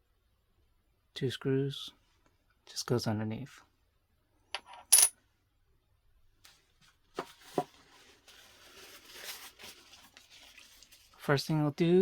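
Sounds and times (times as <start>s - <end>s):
soft rustling: 6.5s - 11.2s.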